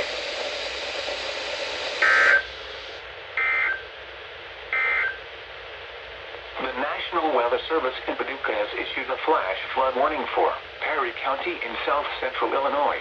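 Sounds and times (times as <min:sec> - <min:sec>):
radio hiss: 0:00.0 - 0:13.0
buzzy warbling data tones: 0:02.0 - 0:02.5.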